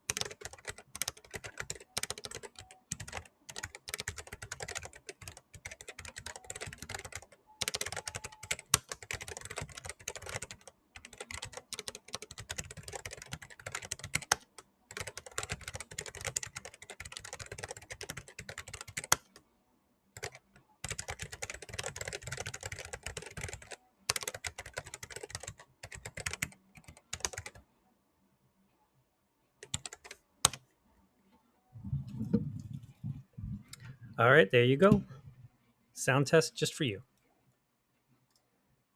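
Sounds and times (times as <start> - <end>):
fast typing on mechanical keyboard: 0.1 - 19.2, 20.2 - 27.6, 29.6 - 30.6.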